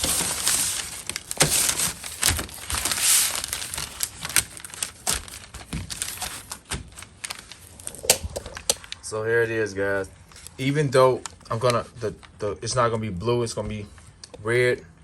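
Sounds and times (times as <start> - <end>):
paper and plastic crinkling: 0.0 - 9.2, 10.0 - 12.8.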